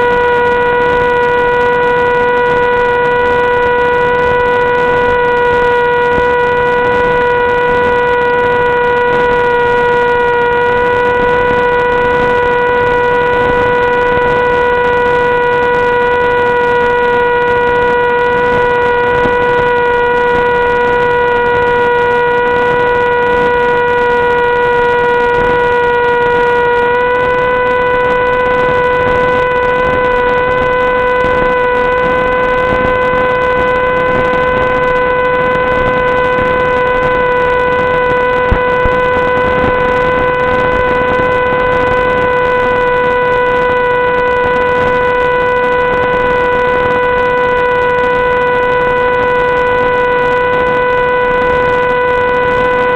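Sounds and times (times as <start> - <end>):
electric motor and propeller whine: 0.0 - 52.9.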